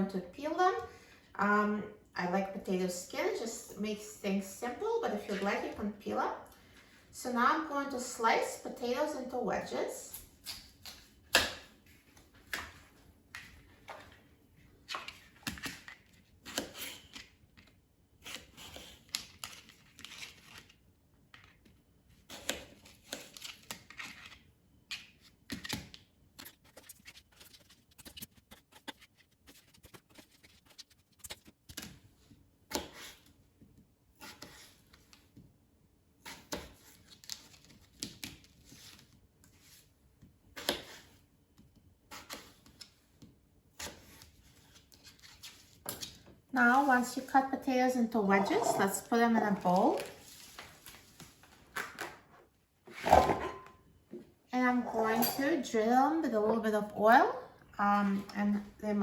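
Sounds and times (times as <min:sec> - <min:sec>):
knife slicing potatoes: 0:16.4 - 0:17.2, 0:32.7 - 0:33.3, 0:34.2 - 0:34.8.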